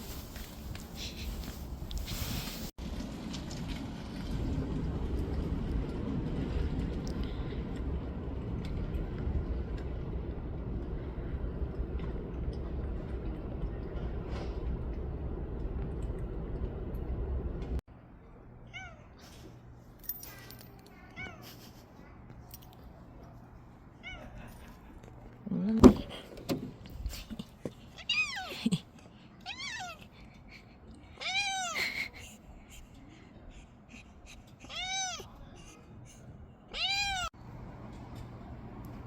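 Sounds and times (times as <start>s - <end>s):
low background rumble: 0.0s - 19.7s
cat meowing: 31.2s - 31.8s, 34.6s - 35.3s, 36.7s - 37.3s.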